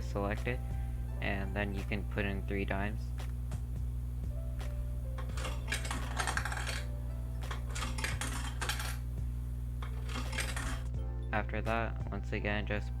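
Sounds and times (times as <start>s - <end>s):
coins rattling through machine: 5.2s - 9.2s, 9.8s - 10.9s.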